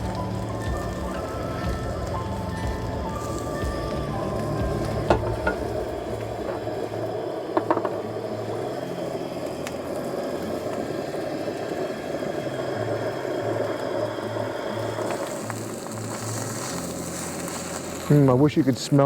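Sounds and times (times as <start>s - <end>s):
food sizzling in a pan: 0.0s - 19.0s.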